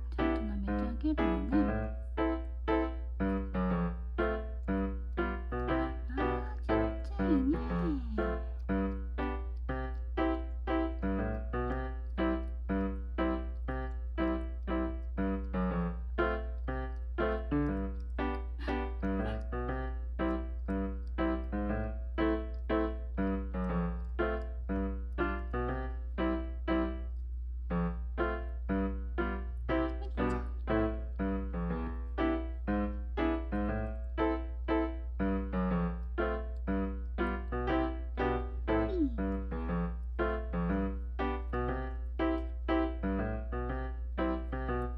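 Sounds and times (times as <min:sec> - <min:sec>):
constant low hum: 0:00.0 - 0:44.9
light piano tune: 0:00.0 - 0:44.9.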